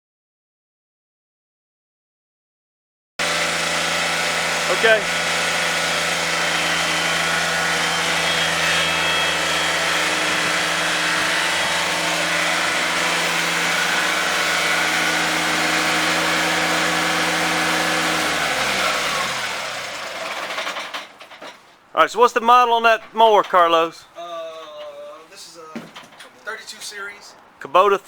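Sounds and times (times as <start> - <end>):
engine winding down: 3.2 - 21.4
mower engine running: 3.2 - 21.6.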